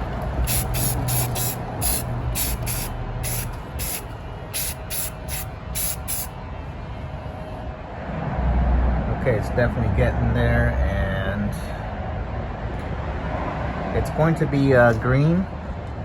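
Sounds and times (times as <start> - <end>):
spray can hissing bursts: 0.4 - 6.3.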